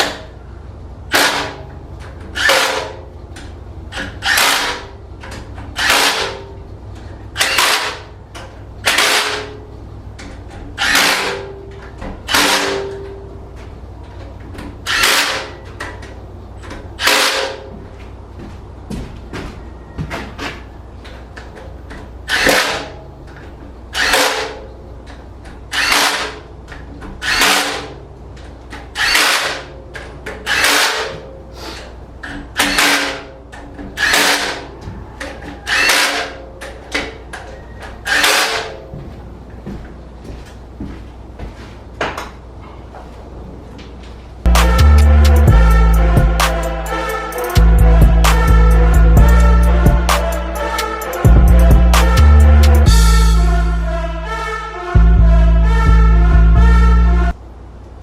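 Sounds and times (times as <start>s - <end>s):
impact wrench bursts: 5.8s - 6.4s, 7.4s - 8.2s, 8.8s - 9.6s, 12.3s - 12.9s, 25.7s - 26.5s, 29.0s - 29.7s.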